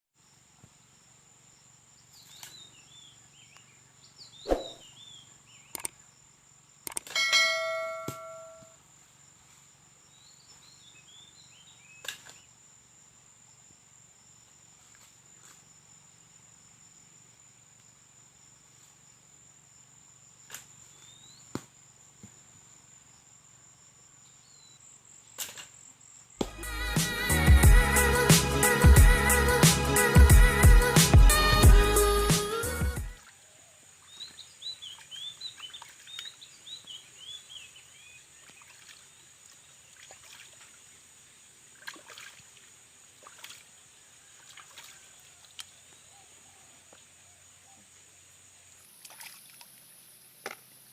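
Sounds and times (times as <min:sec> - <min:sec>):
small birds chirping: 0:02.0 - 0:06.2, 0:34.0 - 0:40.0
knocks and clinks: 0:07.1 - 0:08.7
struck metal ringing: 0:07.2 - 0:08.7.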